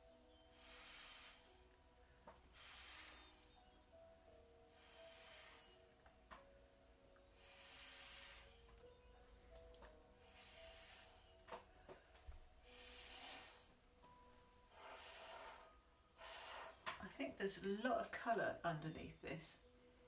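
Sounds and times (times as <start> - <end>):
faint breathing: 0.4 - 4.0, 4.6 - 6.0, 7.2 - 17.0.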